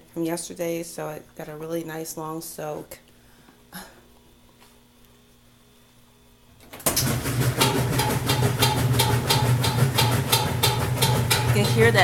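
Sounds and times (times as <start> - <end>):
washing machine motor hum: 6.5 - 12.0
rapid regular knocking: 6.9 - 12.0.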